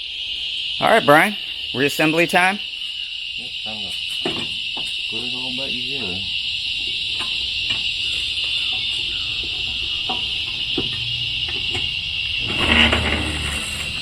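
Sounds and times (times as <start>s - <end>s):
mower parts clicking and knocking: 7.2s - 14.0s.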